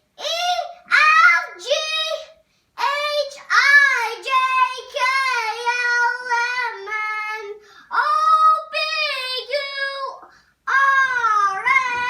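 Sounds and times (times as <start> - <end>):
young child singing wordlessly: 0.0 - 12.0.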